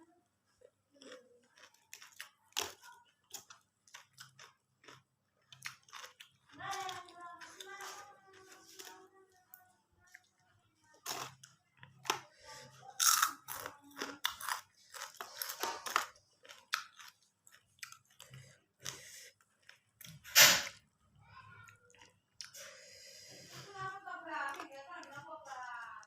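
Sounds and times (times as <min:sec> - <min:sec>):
chewing and crunching food: 0:00.2 - 0:26.0.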